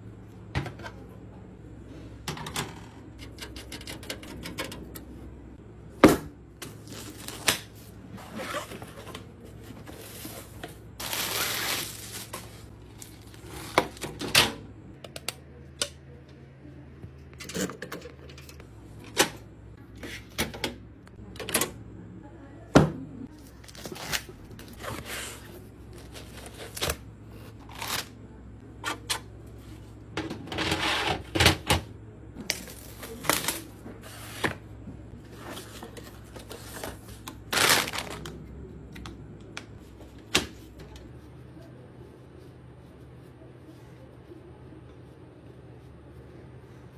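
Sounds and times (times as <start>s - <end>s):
computer parts clicking and clattering: 2.3s - 5.1s.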